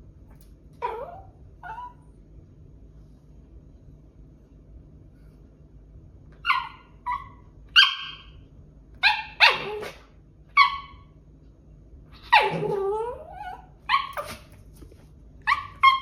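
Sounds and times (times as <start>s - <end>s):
small dog yipping and barking: 0.8s - 2.1s, 6.4s - 8.4s, 9.0s - 11.1s, 12.2s - 14.5s, 15.4s - 16.0s.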